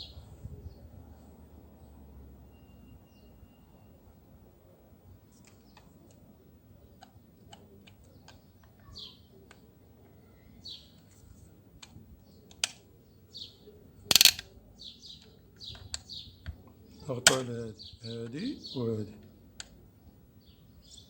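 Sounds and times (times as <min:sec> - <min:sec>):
clicks of clipper parts handled: 0:14.1 - 0:14.4.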